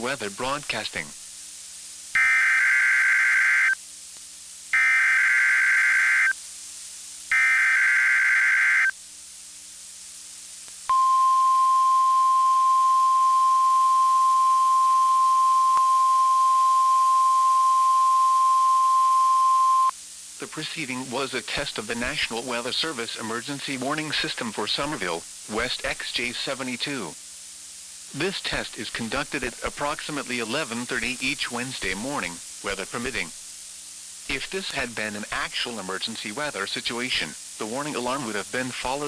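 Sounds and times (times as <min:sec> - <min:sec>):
steady warning alarm tone: 0:02.2 - 0:03.8, 0:04.8 - 0:06.3, 0:07.3 - 0:08.9, 0:10.9 - 0:19.9.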